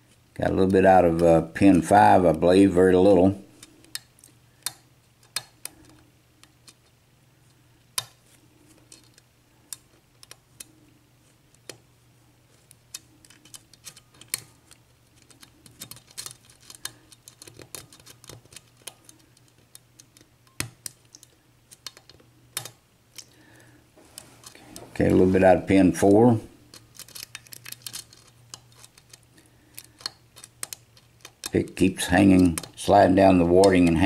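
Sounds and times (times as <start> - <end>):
lock pick clicking pins: 3.6 - 6.9, 8.9 - 10.7, 12.7 - 23.4, 26.0 - 32.8.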